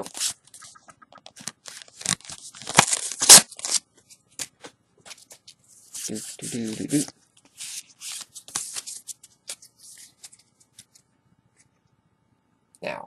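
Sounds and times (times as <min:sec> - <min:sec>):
wrapper crinkling and tearing: 0:01.4 - 0:03.8.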